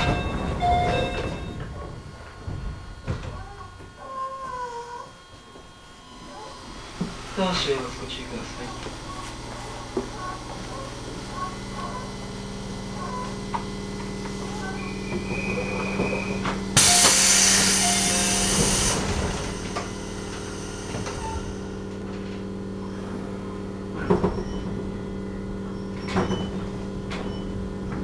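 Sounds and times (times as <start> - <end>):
electrical hum: 0.0 - 28.0
compressed air hiss from train: 16.8 - 21.2.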